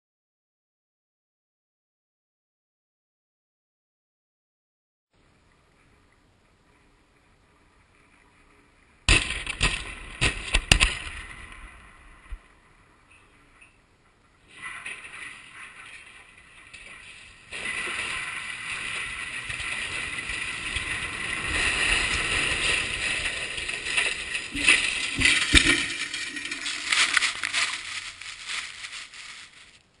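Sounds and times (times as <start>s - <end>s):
rushing rattling noise: 11.0s - 29.8s
metal clattering: 14.5s - 29.8s
heavy crashes of metal structure: 16.9s - 29.3s.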